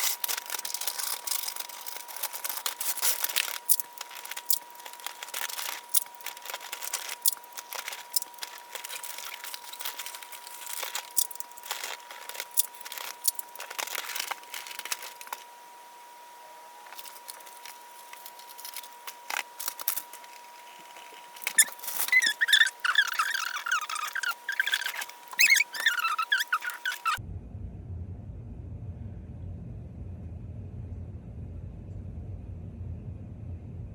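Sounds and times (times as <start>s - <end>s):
packaging crinkling and rustling: 0.0s - 15.5s, 16.9s - 27.2s.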